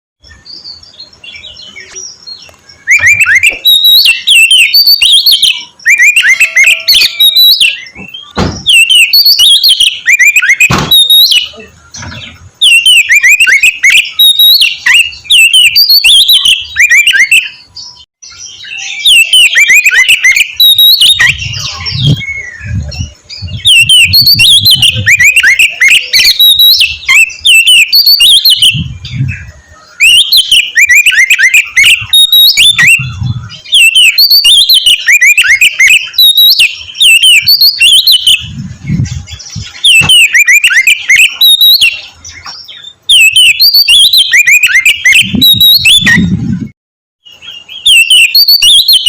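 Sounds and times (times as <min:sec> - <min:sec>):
songbird singing whistles: 0:00.2 - 0:46.4, 0:47.2 - 0:49.0
dull thuds: 0:08.0 - 0:08.7, 0:10.7 - 0:11.1.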